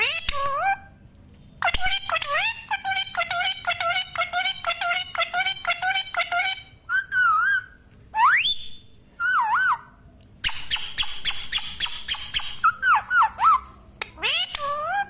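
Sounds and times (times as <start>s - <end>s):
parrot whistles: 6.9s - 13.6s
parrot chattering calls: 9.2s - 15.0s.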